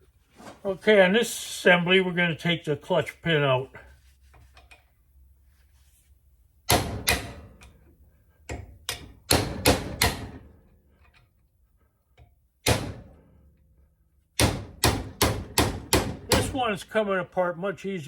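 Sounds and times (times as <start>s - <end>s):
hammer striking metal: 6.7s - 7.5s, 8.9s - 10.4s, 12.6s - 13.1s, 14.4s - 16.6s.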